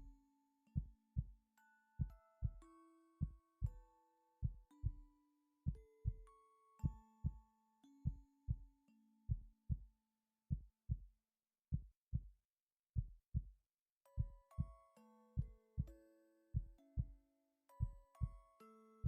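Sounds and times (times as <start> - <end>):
soft background music: 0.0 - 9.6, 14.1 - 19.0
heartbeat thumps: 14.2 - 14.4.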